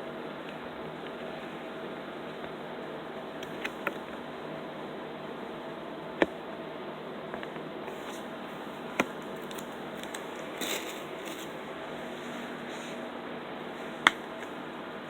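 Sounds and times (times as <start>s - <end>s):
steady background hiss: 0.0s - 15.0s
packaging crinkle: 7.9s - 12.6s
sharp clicks of disc case: 9.0s - 11.6s.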